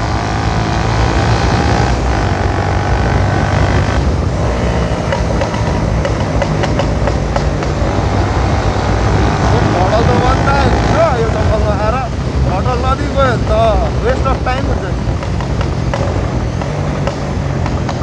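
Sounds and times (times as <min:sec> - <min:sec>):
motorcycle engine running: 0:00.0 - 0:18.0
wind on microphone: 0:00.0 - 0:18.0.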